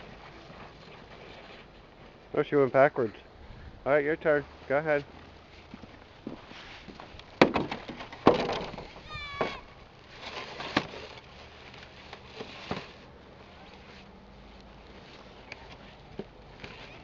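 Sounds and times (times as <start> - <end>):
sled knocking and scraping on ice: 6.3 - 13.0
child squealing: 9.0 - 9.8.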